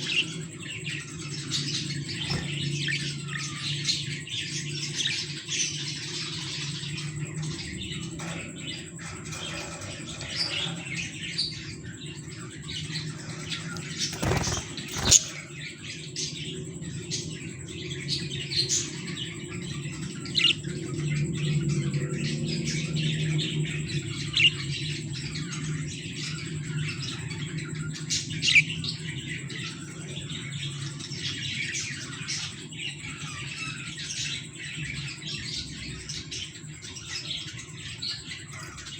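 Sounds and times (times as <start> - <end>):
steady low hum: 0.0 - 38.9
budgerigars chirping: 13.1 - 15.6, 20.2 - 20.6.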